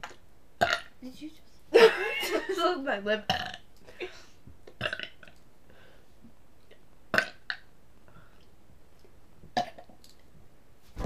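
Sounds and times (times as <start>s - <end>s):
person burping: 0.0s - 0.9s, 3.3s - 3.6s, 4.8s - 5.4s, 7.1s - 7.7s, 9.6s - 10.0s.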